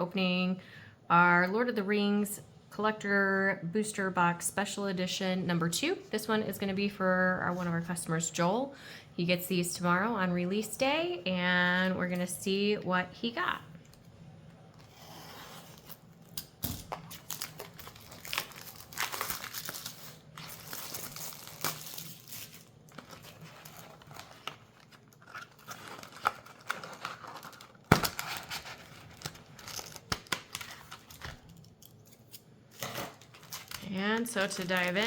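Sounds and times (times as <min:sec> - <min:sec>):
plastic wrap crinkling and tearing: 0:15.7 - 0:35.0.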